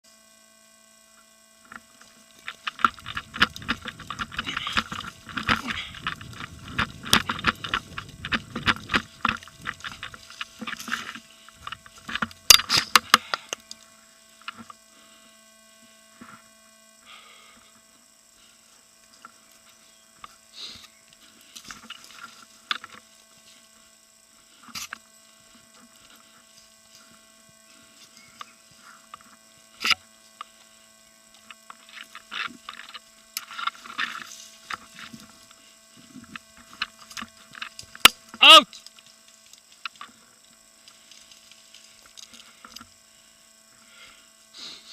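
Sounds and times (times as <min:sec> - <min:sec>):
electrical hum: 0:00.0 - 0:44.9
crackling and rustling: 0:01.6 - 0:14.8, 0:18.5 - 0:43.2.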